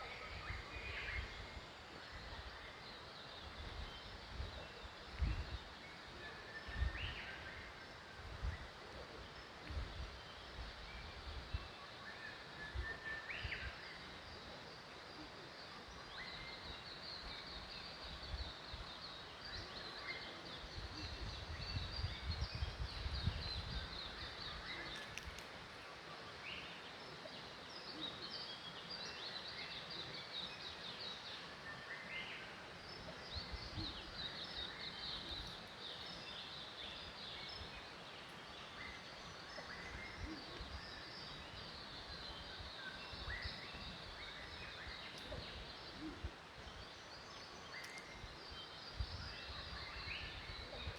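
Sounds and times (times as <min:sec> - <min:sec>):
small birds chirping: 0:15.2 - 0:50.9.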